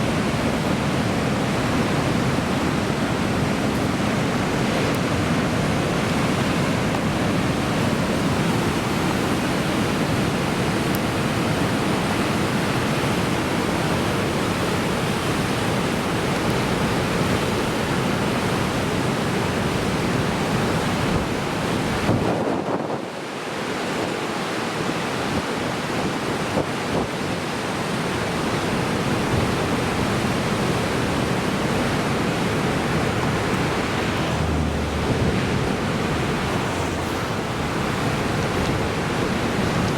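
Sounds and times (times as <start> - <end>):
heavy surf breaking on shore: 0.0 - 39.9
wind buffeting microphone: 30.9 - 39.9.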